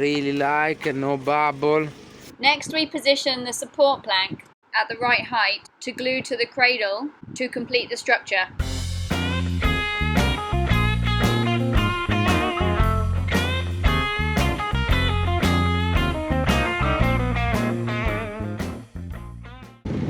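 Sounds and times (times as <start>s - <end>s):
steady bass line: 8.6s - 19.6s
guitar-led rock music: 8.6s - 20.0s.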